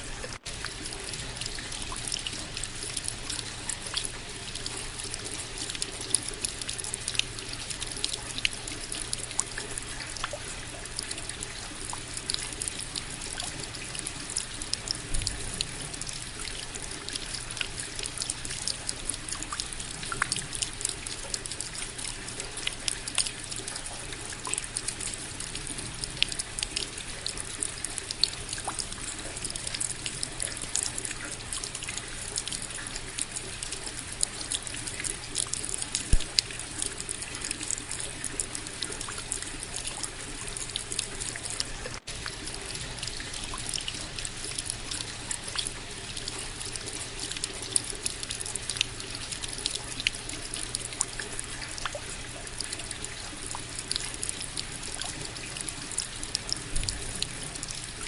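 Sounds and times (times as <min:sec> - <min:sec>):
hiss of rain: 0:00.0 - 0:58.0
rain drops falling: 0:00.0 - 0:58.0.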